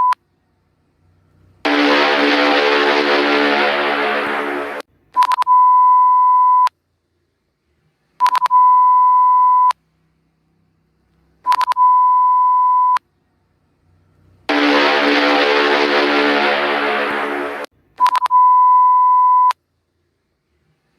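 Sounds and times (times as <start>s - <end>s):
loud buzzy alarm tone: 1.6s - 4.8s, 14.5s - 17.7s
steady high beep: 1.7s - 6.7s, 11.5s - 13.0s, 14.5s - 19.6s.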